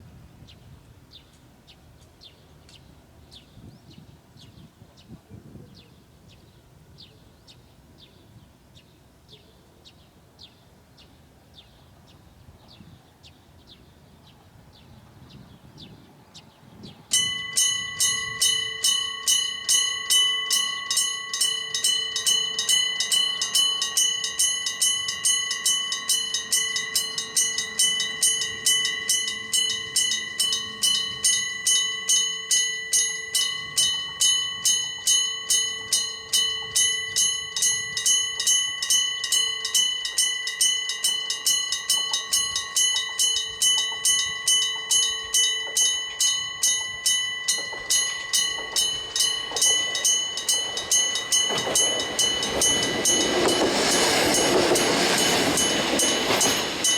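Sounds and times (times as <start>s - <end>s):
level crossing warning bell: 17.1s - 56.9s.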